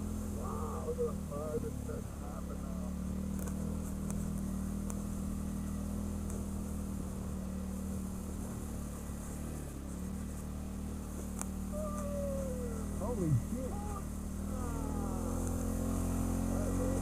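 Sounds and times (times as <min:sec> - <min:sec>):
quad bike engine humming: 0:00.0 - 0:17.0
faint ticks: 0:03.3 - 0:05.0, 0:06.2 - 0:06.5, 0:11.1 - 0:12.1.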